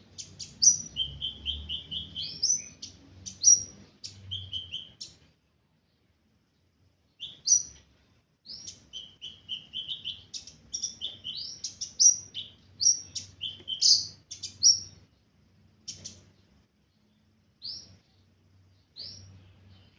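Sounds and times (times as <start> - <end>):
sunbird singing high chirps: 0.0 - 5.2, 7.1 - 7.8, 8.4 - 15.2, 15.8 - 19.9.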